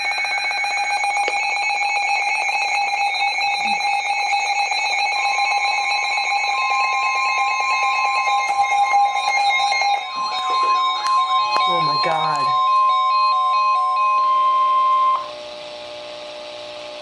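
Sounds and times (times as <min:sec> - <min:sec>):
electronic alarm tone buzzing: 0:00.0 - 0:17.0
second higher alarm tone: 0:03.5 - 0:15.8.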